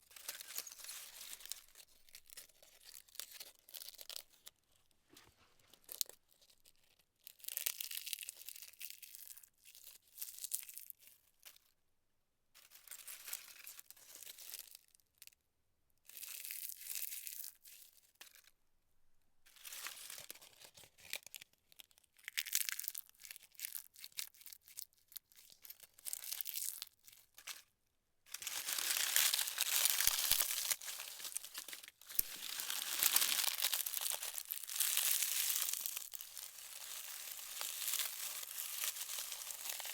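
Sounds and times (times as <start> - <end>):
dry leaves crunching: 28.3 - 39.9.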